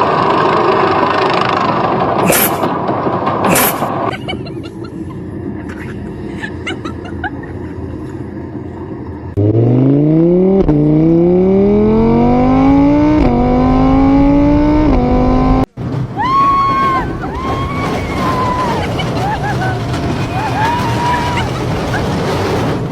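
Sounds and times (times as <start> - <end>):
rumbling noise: 0.0 - 22.9
car engine accelerating hard: 9.3 - 15.8.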